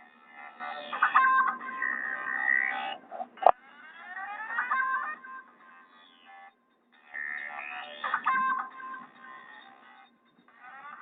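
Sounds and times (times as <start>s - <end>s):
electronic ringtone tune: 3.6s - 11.0s.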